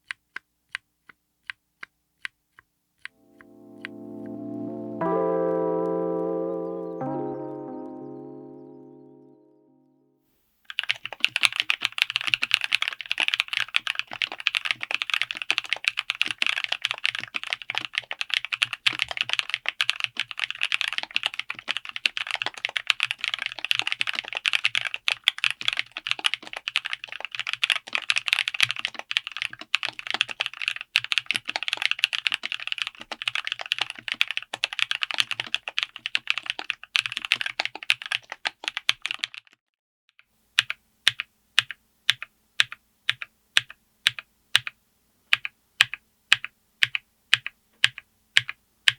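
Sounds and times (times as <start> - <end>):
mechanical keyboard typing: 10.7 - 39.6, 40.6 - 48.9.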